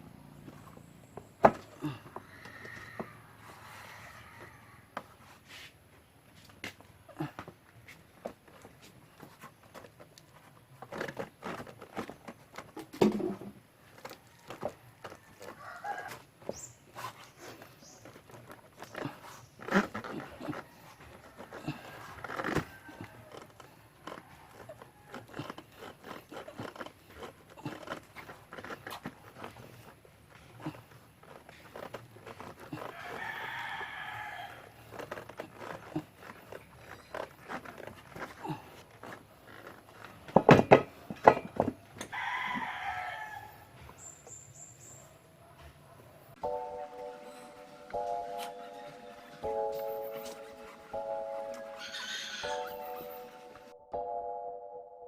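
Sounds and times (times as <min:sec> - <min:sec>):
rooster crowing: 0:01.8 - 0:05.1, 0:14.0 - 0:16.3, 0:20.5 - 0:25.5, 0:32.6 - 0:34.8, 0:42.0 - 0:43.8, 0:51.8 - 0:52.9.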